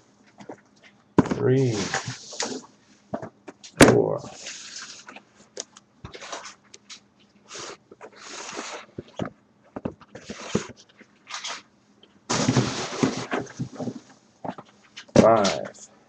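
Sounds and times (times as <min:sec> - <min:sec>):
cardboard boxes rustling and scraping: 0:01.2 - 0:05.2, 0:06.1 - 0:06.6, 0:07.5 - 0:09.3, 0:10.0 - 0:11.6, 0:12.3 - 0:15.7.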